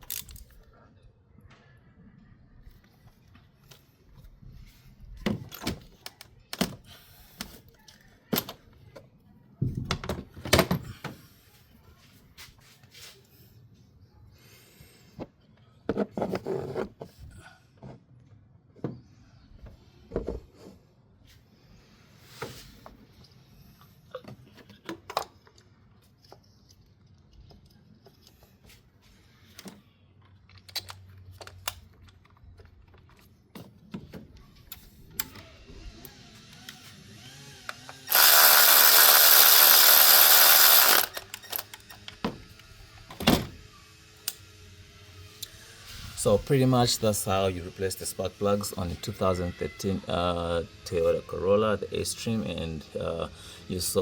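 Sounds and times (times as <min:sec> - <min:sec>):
rattling bursts: 0:38.1 - 0:41.8.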